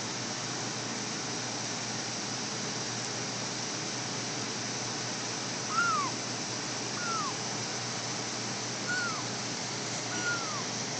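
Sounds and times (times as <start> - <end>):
kitten mewing: 5.7 - 6.2, 7.0 - 7.4, 8.9 - 9.3, 10.1 - 10.7.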